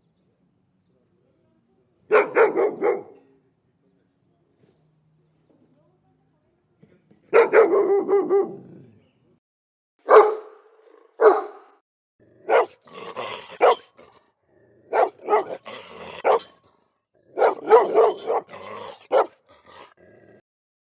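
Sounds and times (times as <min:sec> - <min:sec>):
dog barking: 0:02.1 - 0:03.2, 0:07.3 - 0:08.8, 0:10.0 - 0:11.8, 0:12.4 - 0:14.2, 0:14.8 - 0:16.6, 0:17.3 - 0:19.9.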